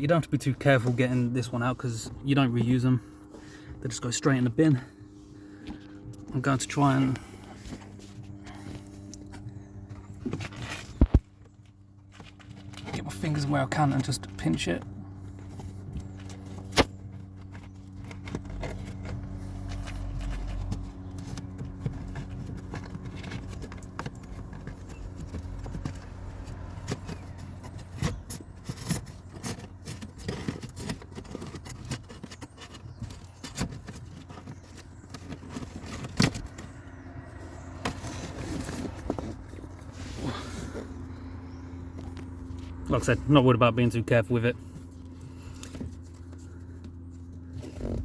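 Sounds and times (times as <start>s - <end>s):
steady low hum: 0.0s - 48.0s
plastic scraping and rustling: 5.5s - 41.3s.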